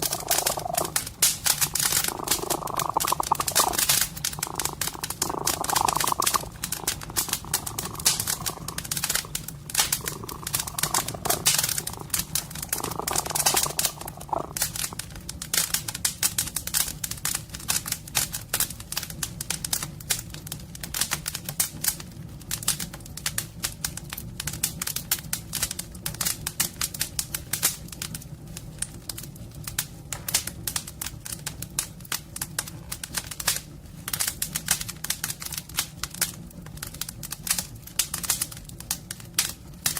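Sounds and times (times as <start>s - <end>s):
cat purring: 0.0s - 16.1s
wood fire crackling: 0.0s - 39.9s.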